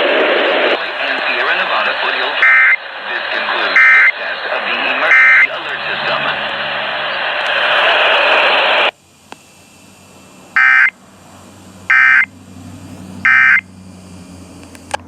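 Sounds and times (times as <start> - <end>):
loud hiss: 0.0 - 14.6
digital data bursts: 0.8 - 11.0, 11.9 - 12.3, 13.2 - 13.7.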